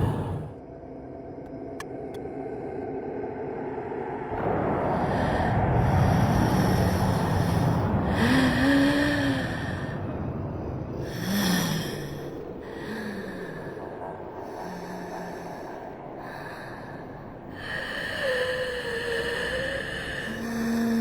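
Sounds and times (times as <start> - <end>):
heavy low rumble: 0.0 - 16.2.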